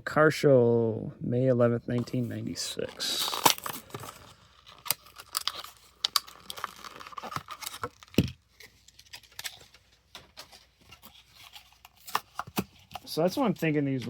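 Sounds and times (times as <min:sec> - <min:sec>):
plastic packaging crackling: 0:02.8 - 0:13.7.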